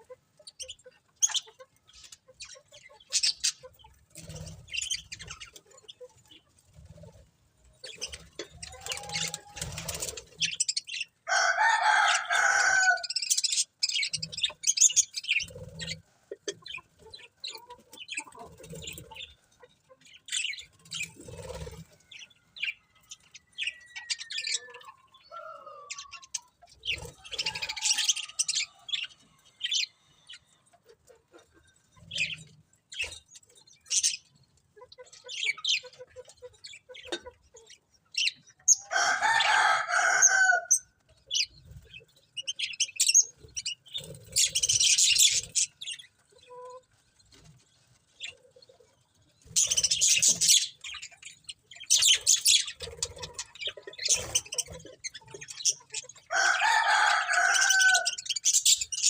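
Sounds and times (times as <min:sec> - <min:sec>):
budgerigars chirping: 0:00.0 - 0:06.1, 0:11.9 - 0:19.4, 0:35.0 - 0:39.8, 0:40.7 - 0:46.7, 0:49.5 - 0:59.0.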